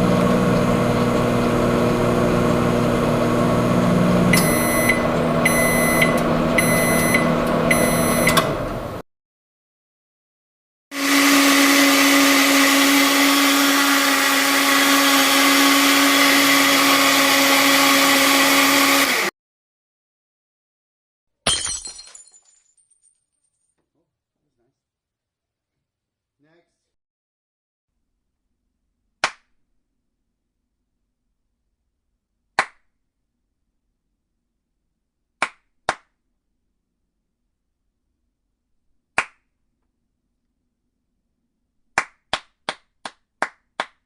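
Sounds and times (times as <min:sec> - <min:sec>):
machine hum: 0:00.0 - 0:09.0
electronic beeps: 0:04.4 - 0:08.4.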